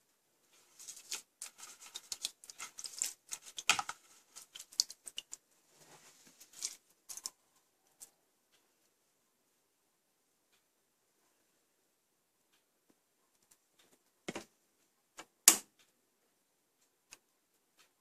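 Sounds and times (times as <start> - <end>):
objects being handled: 0.5 - 7.4.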